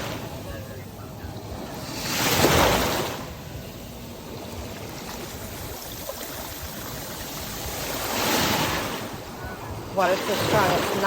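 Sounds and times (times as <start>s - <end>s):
wave breaking: 0.0s - 11.0s.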